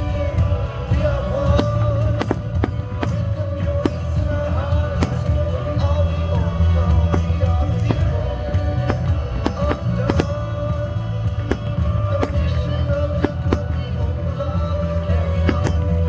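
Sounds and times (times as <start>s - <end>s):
music with singing and bass: 0.0s - 16.0s
fireworks bangs: 6.8s - 10.6s.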